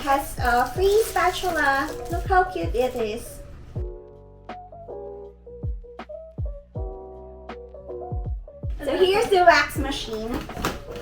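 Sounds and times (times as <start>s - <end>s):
light percussion: 0.0s - 4.7s
keyboard chords: 1.5s - 11.0s
kick drum: 3.8s - 4.0s, 5.6s - 7.2s, 8.0s - 11.0s.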